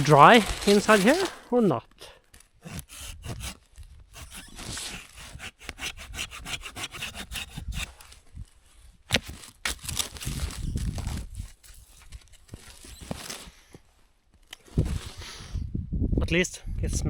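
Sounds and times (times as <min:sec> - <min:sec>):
hand saw cutting wood: 0:00.0 - 0:01.5, 0:02.6 - 0:08.2, 0:09.1 - 0:13.6
sharp wood cracks: 0:00.0 - 0:01.5, 0:02.2 - 0:08.2, 0:09.1 - 0:13.6.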